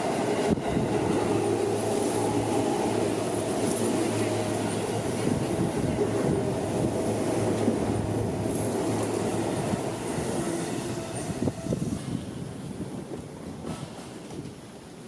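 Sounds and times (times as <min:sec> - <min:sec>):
electric train running past: 0:00.0 - 0:14.3.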